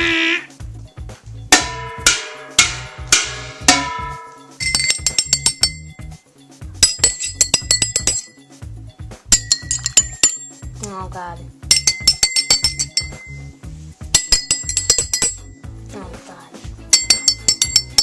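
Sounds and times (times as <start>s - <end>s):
struck ringing notes: 1.5s - 6.2s, 6.8s - 8.6s, 9.3s - 11.0s, 11.6s - 15.8s, 16.9s - 18.0s
high-pitched clinks: 1.5s - 8.6s, 9.2s - 11.0s, 11.6s - 15.8s, 16.9s - 18.0s.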